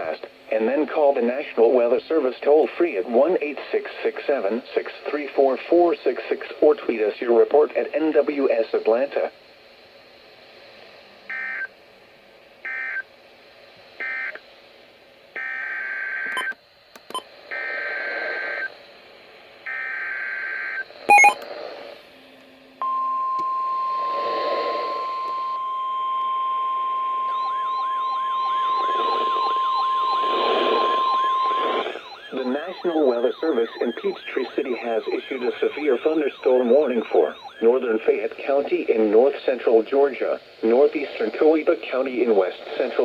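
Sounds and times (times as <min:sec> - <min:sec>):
data tone squawks: 0:21.1 - 0:21.4, 0:24.0 - 0:37.9
steady alert tone: 0:21.1 - 0:21.4
static crackles: 0:27.1 - 0:43.0.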